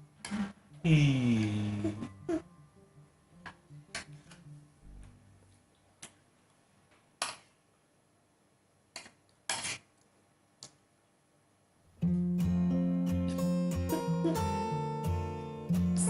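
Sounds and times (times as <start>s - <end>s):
strummed acoustic guitar music: 12.0s - 16.0s.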